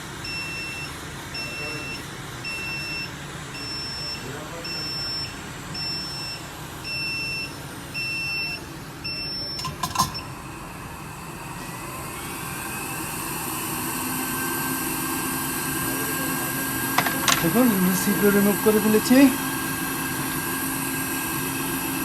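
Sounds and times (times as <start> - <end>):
electronic beeps: 3.6 - 10.3
hot-air station hiss: 8.5 - 22.0.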